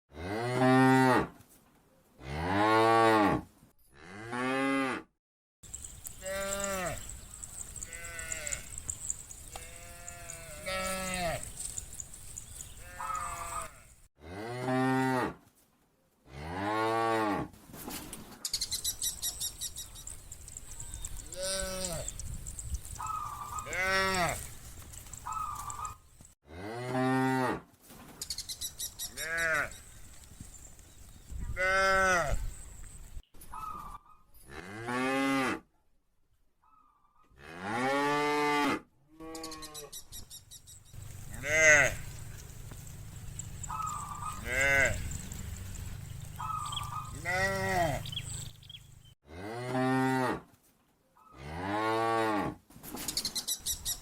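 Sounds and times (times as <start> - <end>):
cattle mooing: 6.1 - 11.8, 12.6 - 15.3, 23.0 - 24.6, 41.0 - 48.6.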